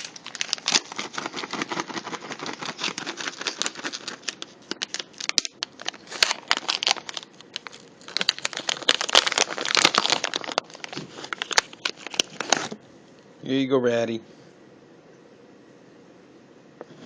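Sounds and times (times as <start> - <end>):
plastic bag crinkling: 0.0 - 12.8.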